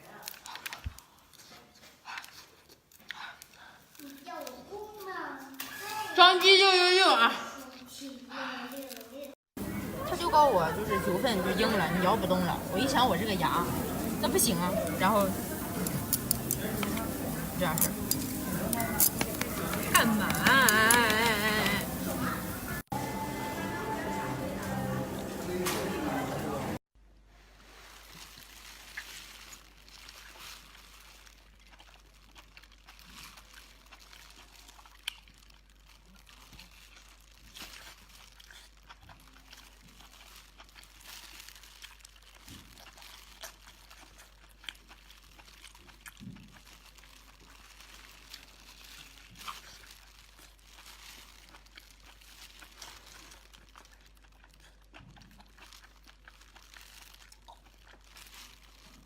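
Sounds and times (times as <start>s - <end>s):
person eating crunching: 0.0s - 4.6s, 11.6s - 22.9s, 27.8s - 59.0s.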